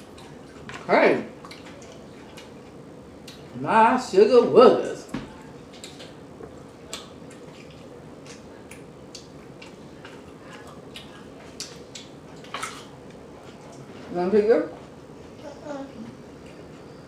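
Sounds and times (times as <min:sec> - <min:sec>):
faint room hum: 0:00.0 - 0:17.0
person chewing with mouth smacks: 0:01.4 - 0:03.5, 0:05.7 - 0:13.9.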